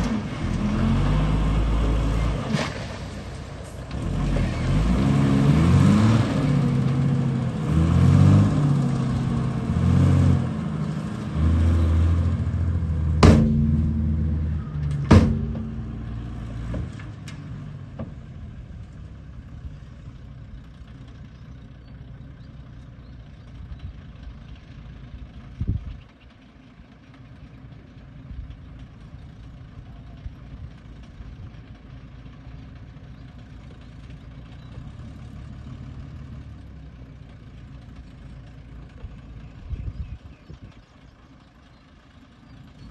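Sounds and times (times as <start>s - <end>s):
bulldozer engine revving: 0.0s - 42.9s
sharp knocks: 13.2s - 16.9s
thump: 13.2s - 17.2s.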